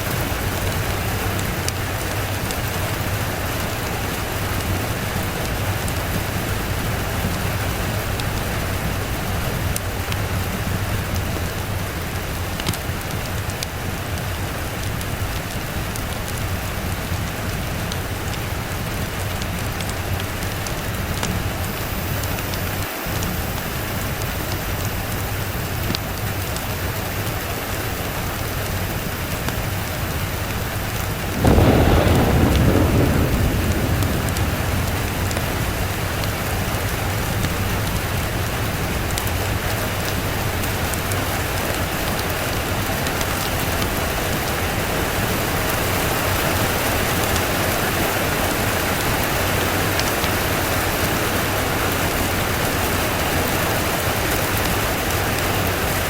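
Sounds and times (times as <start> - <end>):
heavy rain falling: 0.0 - 56.0
thunder rumbling: 30.4 - 56.0.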